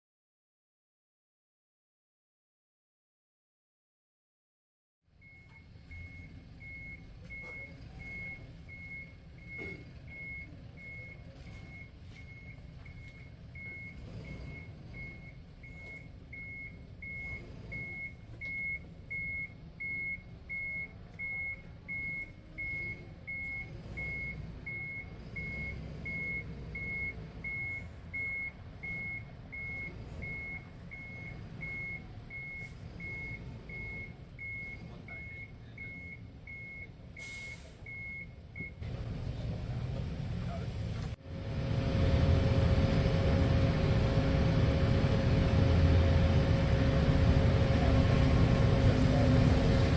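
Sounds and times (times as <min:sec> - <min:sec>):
truck reversing alarm beeping: 0:05.1 - 0:39.9, 0:41.0 - 0:49.9
truck engine rumble: 0:05.1 - 0:49.9.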